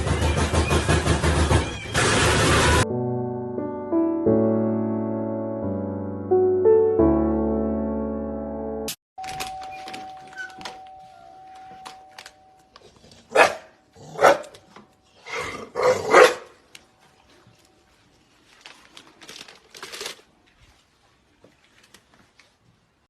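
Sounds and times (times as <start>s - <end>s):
dog barking: 13.3s - 14.5s, 15.8s - 16.6s.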